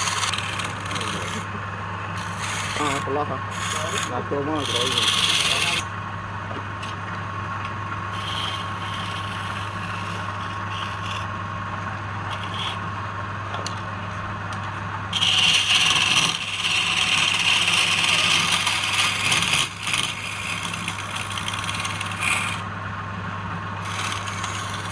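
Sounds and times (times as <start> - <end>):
tool scraping spinning wood: 0.0 - 6.0, 8.0 - 12.9, 15.1 - 22.7, 23.6 - 24.9
wood lathe motor humming: 0.0 - 6.2, 7.9 - 12.9, 15.1 - 22.8, 23.5 - 24.9.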